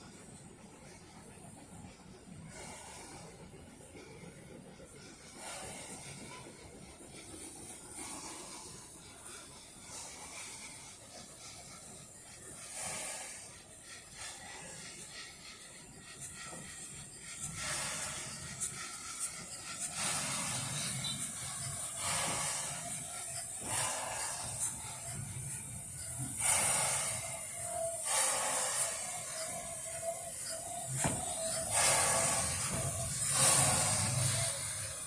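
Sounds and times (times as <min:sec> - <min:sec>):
steam locomotive hissing: 0:00.0 - 0:35.0.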